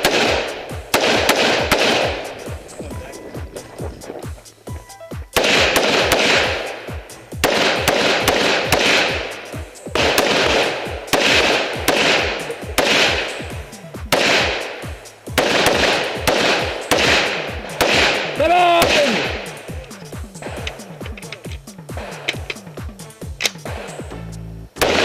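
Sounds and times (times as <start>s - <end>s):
handgun shots: 0.0s - 2.6s, 5.4s - 6.8s, 7.4s - 13.4s, 14.1s - 19.5s, 20.4s - 22.6s, 23.4s - 23.9s, 24.8s - 25.0s
loud rushing noise: 0.0s - 4.7s.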